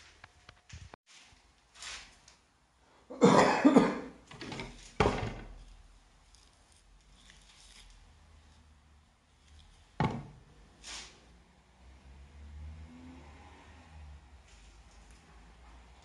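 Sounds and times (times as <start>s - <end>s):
person coughing: 3.1s - 4.2s.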